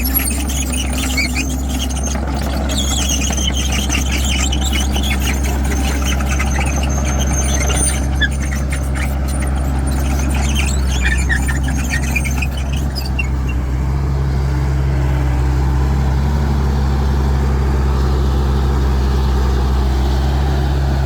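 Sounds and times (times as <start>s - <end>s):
high-pitched metallic squealing: 0.0s - 13.6s
excavator diesel engine running: 0.0s - 21.0s.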